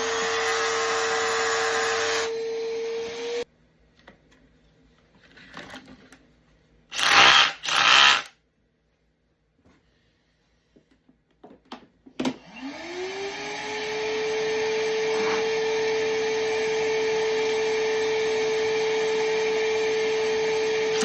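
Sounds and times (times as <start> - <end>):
rotary hammer drilling concrete: 0.0 - 3.4, 6.9 - 8.3, 12.6 - 21.0.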